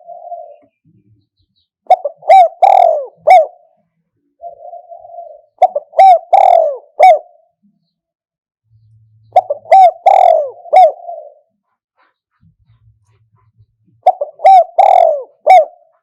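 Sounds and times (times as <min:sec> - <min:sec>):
dove cooing: 0:00.0 - 0:01.0, 0:01.9 - 0:07.6, 0:09.3 - 0:12.2, 0:14.0 - 0:16.0.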